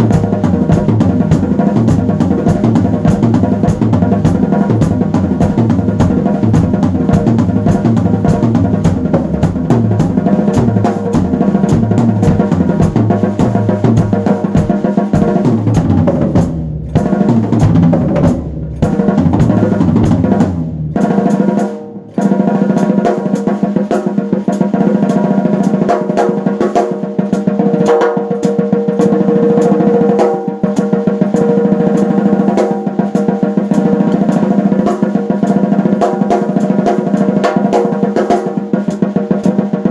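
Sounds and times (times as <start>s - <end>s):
deep bass: 0.0s - 21.3s
drum kit with rapid hits: 0.0s - 39.9s.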